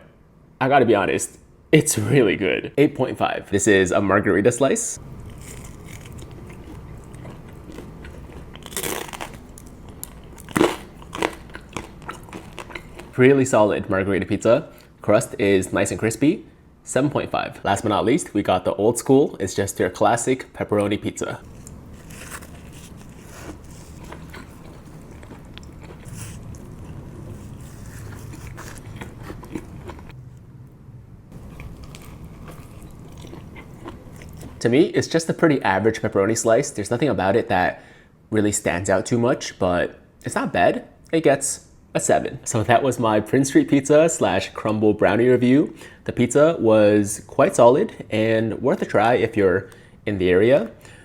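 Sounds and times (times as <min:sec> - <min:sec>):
low room hum: 0:00.0 - 0:51.0
pizza crust crunching: 0:05.3 - 0:13.1, 0:21.4 - 0:30.2.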